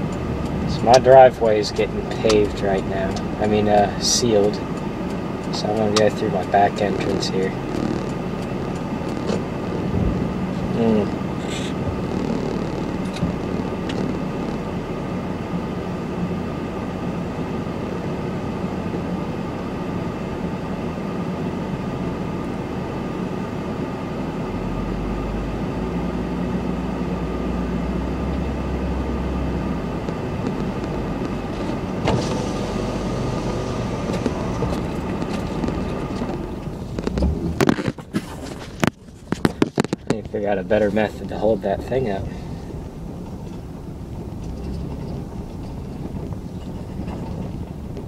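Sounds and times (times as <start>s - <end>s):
car engine running: 0.0s - 48.0s
road noise inside a vehicle: 0.0s - 48.0s
deep low drone: 5.6s - 20.8s, 24.3s - 37.6s.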